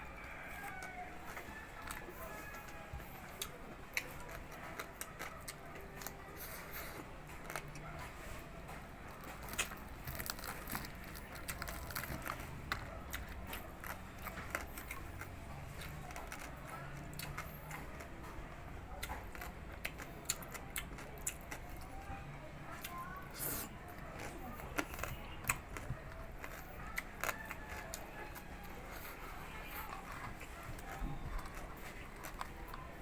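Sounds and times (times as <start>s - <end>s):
chewing crispy food: 0.0s - 33.0s.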